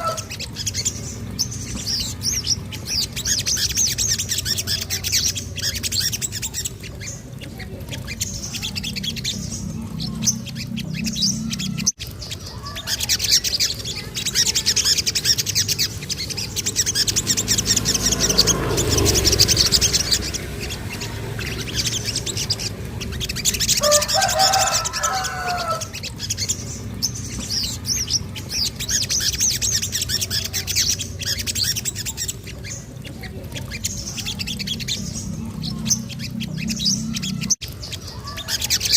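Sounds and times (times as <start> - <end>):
bird chirps and trills: 0.0 - 38.9.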